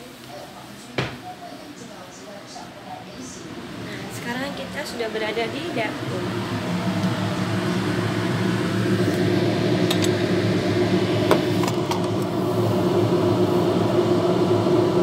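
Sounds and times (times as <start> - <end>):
motor hum: 3.4 - 15.0.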